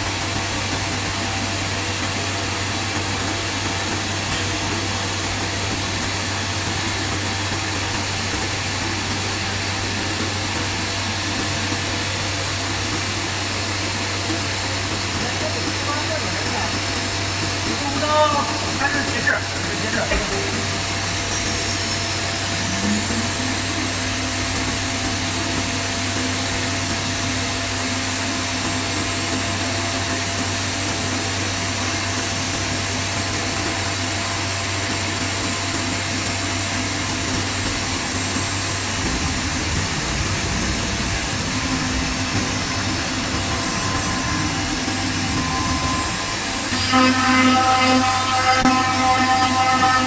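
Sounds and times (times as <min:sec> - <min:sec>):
router machine running: 0:00.0 - 0:50.0
low tone: 0:19.4 - 0:28.7, 0:37.0 - 0:49.9.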